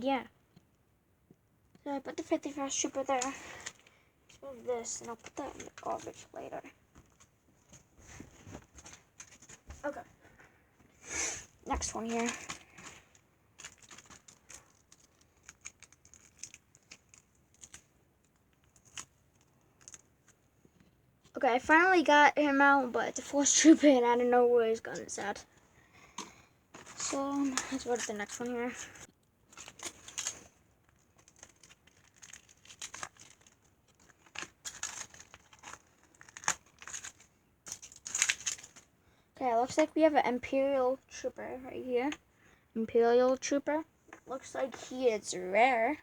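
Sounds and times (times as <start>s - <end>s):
package crinkling: 4.8s - 6.2s, 11.7s - 20.4s, 26.8s - 38.9s.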